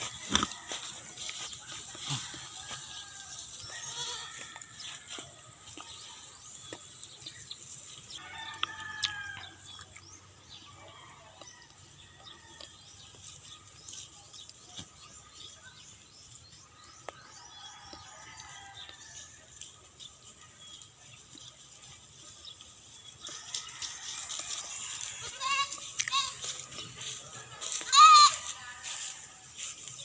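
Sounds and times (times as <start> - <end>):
small birds chirping: 3.1 - 24.0.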